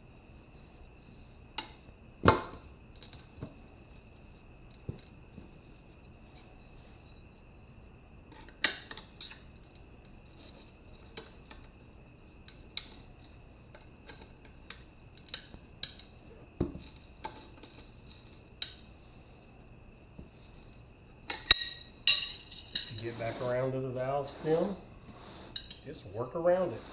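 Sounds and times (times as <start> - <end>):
metal tools clinking on wheel rim: 21.3 - 24.8, 25.5 - 26.4.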